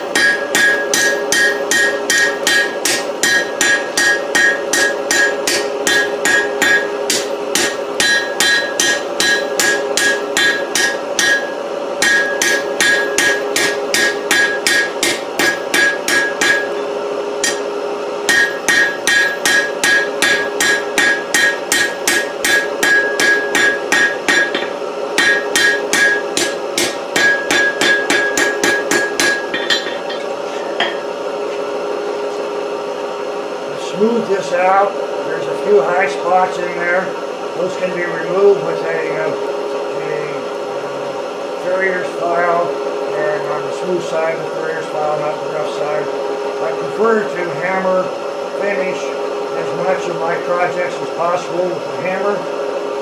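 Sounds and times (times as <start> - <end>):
hammer striking steel on anvil: 0.0 - 31.1
steady hum: 0.0 - 53.0.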